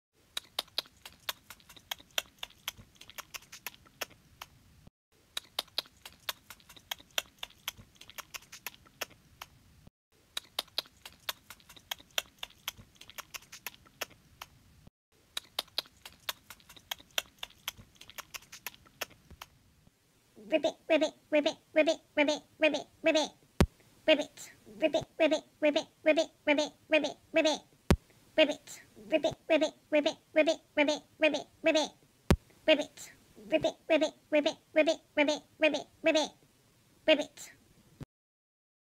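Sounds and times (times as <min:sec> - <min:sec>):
rabbit clicking: 0:00.4 - 0:04.6, 0:05.4 - 0:09.6, 0:10.4 - 0:14.6, 0:15.4 - 0:19.5.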